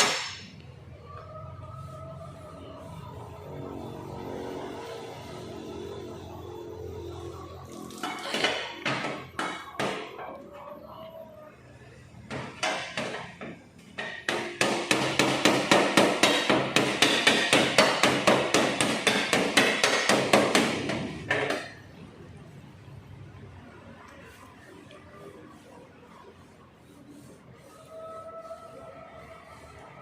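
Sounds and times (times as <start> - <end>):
hammer beating metal: 14.2 - 21.7.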